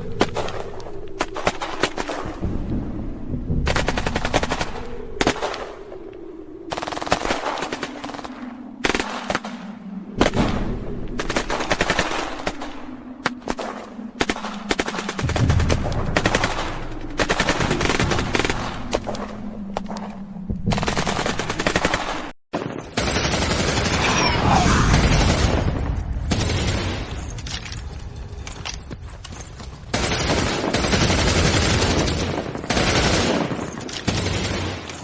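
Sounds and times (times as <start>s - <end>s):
low steady drone: 0.0s - 22.3s.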